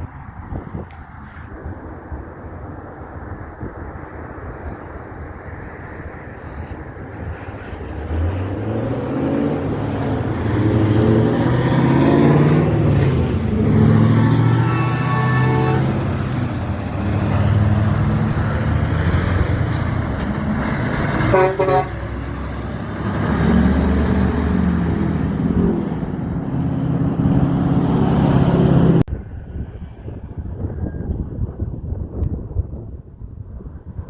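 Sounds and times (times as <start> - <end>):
trucks driving past: 0.0 - 31.7
wind noise: 0.0 - 34.0
truck horn: 10.4 - 22.7.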